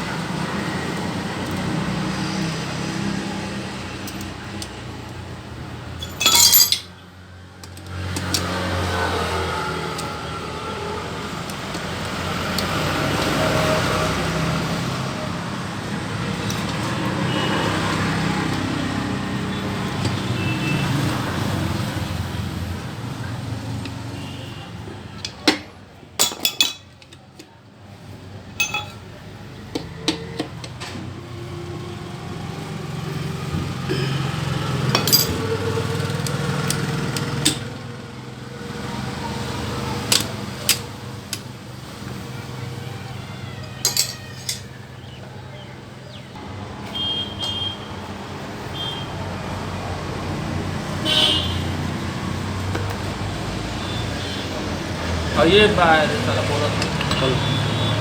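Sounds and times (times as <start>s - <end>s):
metal tools clinking: 6.0s - 7.0s, 26.2s - 27.2s, 28.6s - 29.2s, 33.9s - 35.6s, 43.6s - 44.8s, 56.7s - 57.6s.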